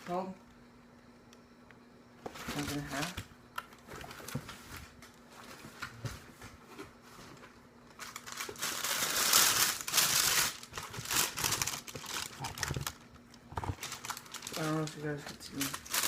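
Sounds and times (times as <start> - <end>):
paper crinkling and rustling: 3.8 - 16.0.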